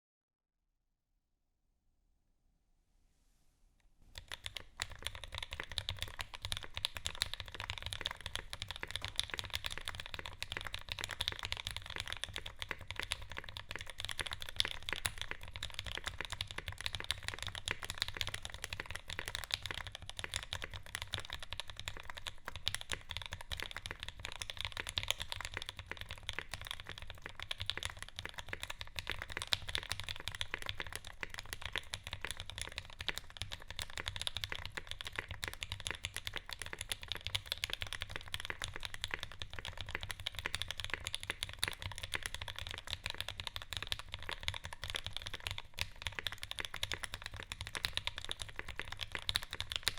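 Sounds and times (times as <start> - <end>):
fast typing on mechanical keyboard: 4.2 - 49.9.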